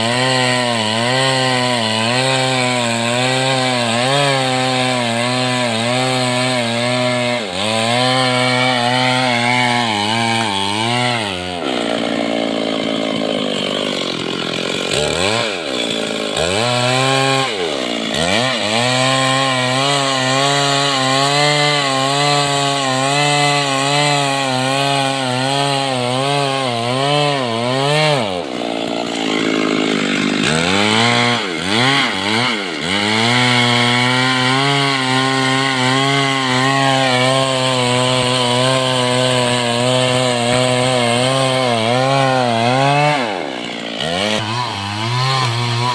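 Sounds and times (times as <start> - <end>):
chainsaw cutting wood: 0.0 - 45.9.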